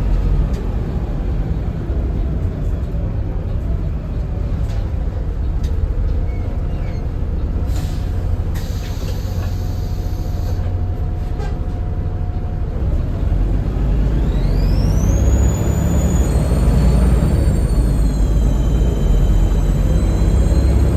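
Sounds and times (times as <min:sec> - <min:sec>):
bus diesel engine rumbling: 0:00.0 - 0:20.9
turbocharger whistle: 0:14.2 - 0:20.9.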